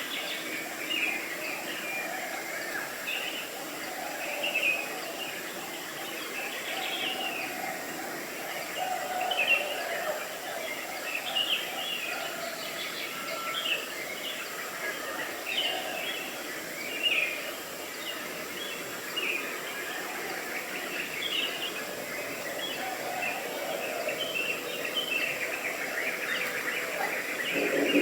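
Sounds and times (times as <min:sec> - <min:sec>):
steady background hiss: 0:00.0 - 0:28.0
birds chirping: 0:20.3 - 0:28.0.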